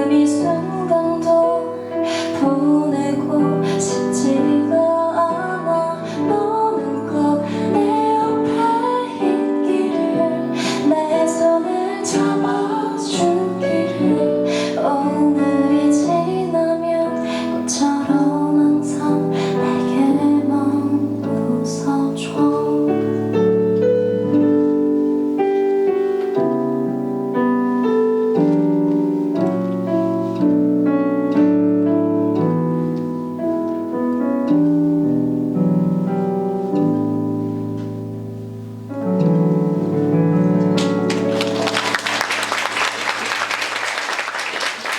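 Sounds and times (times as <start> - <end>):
person singing: 0.0 - 23.1
keyboard chords: 6.3 - 42.8.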